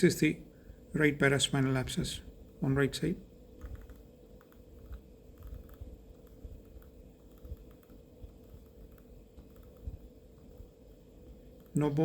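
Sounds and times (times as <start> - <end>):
steady low hum: 0.0 - 12.0
computer mouse clicking: 3.6 - 11.9.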